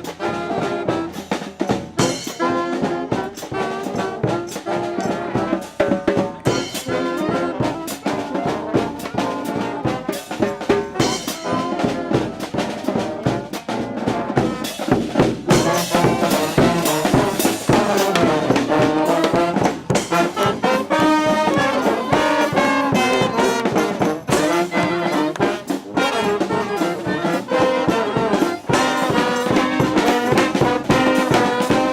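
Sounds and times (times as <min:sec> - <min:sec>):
marching brass band playing: 0:00.0 - 0:31.9
steady drum hits: 0:14.4 - 0:26.7.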